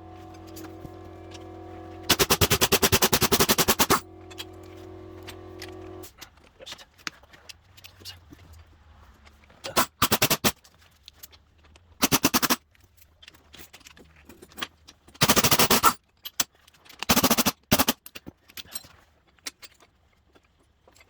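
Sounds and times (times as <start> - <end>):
wrench rapid clicking: 2.0 - 5.8.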